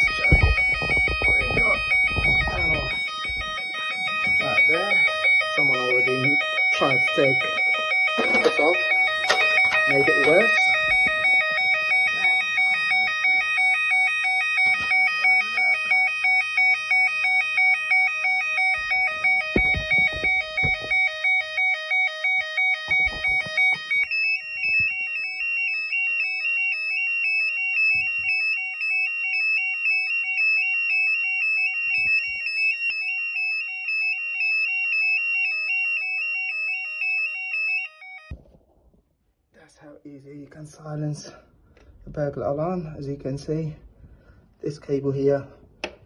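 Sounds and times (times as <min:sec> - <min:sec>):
burglar alarm siren warbling: 0:00.0 - 0:38.6
handling knocks and clicks: 0:18.8 - 0:21.1.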